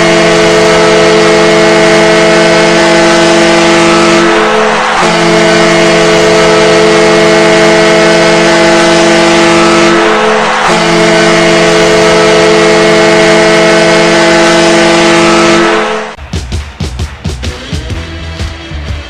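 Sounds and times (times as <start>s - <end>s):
goal horn chord: 0.0s - 19.0s
dense wash of noise: 4.1s - 7.6s, 9.8s - 13.2s.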